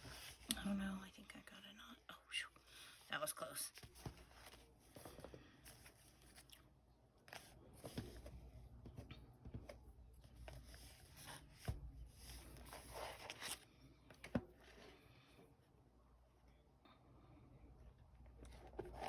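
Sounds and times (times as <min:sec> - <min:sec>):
paper pages rustling: 0:07.2 - 0:14.9.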